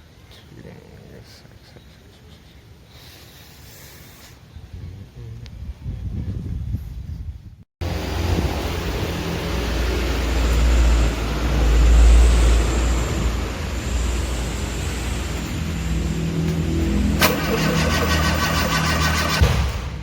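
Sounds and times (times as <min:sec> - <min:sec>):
engine running with low rumble: 0:07.8 - 0:20.0
sharp crack: 0:17.2 - 0:20.0.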